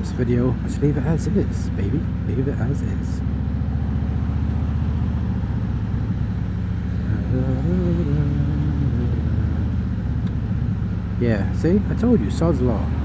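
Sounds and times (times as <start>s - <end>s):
motorcycle engine running: 0.0s - 13.0s
rising and falling tone: 7.0s - 10.4s.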